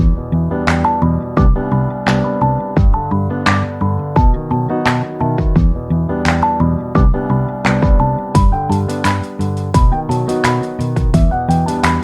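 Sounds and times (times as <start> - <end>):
drum hits: 4.2 - 4.6, 5.4 - 5.9, 7.0 - 8.8, 10.9 - 11.7.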